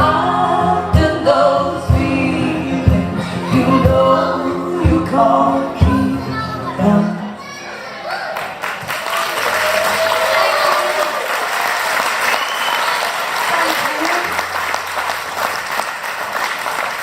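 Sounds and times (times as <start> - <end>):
live band music: 0.0 - 7.3
crowd shouts: 7.4 - 11.5
audience applauding and cheering: 8.0 - 17.0.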